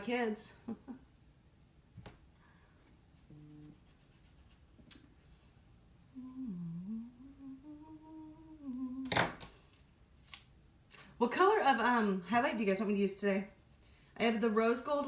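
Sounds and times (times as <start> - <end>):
woman humming: 3.3 - 3.8, 6.0 - 9.2.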